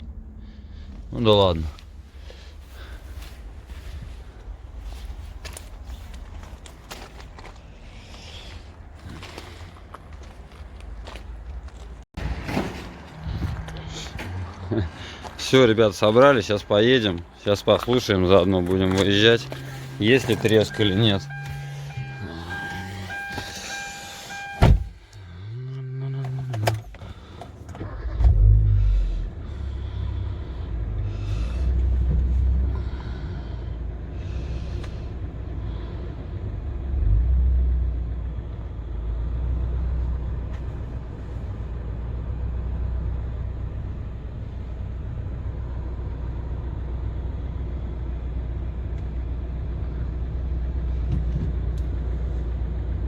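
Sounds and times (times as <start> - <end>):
car engine rumbling: 0.0 - 53.0
car door shutting: 20.2 - 25.0, 26.2 - 28.6.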